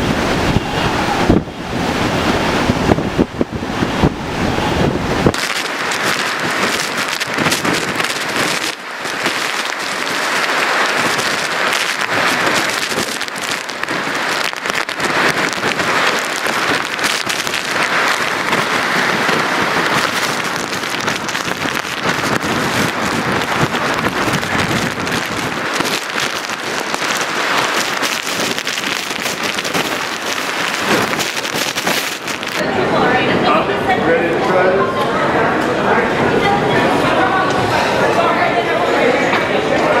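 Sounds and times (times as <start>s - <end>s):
driving rain and wind: 0.0s - 40.0s.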